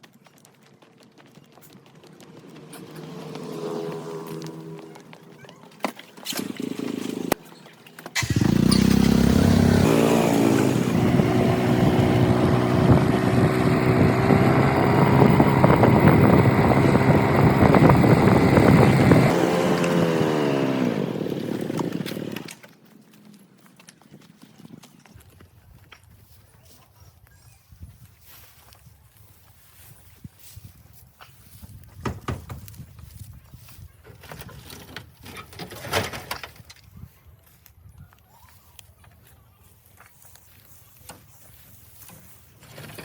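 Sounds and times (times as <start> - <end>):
motor running: 8.2 - 22.6.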